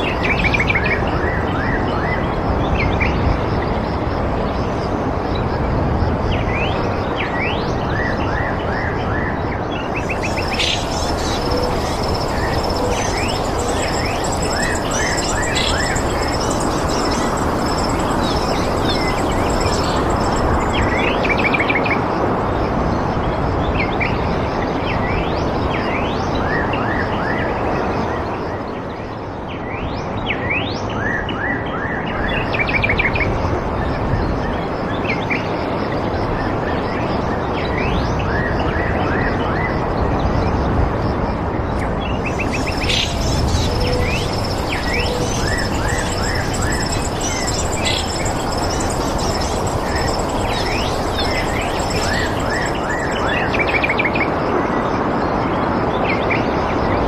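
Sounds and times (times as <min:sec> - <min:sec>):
rushing background noise: 0:00.0 - 0:25.6, 0:39.8 - 0:57.0
small birds chirping: 0:09.9 - 0:21.5, 0:41.8 - 0:54.1
high thin whine: 0:10.0 - 0:21.2, 0:41.8 - 0:53.8.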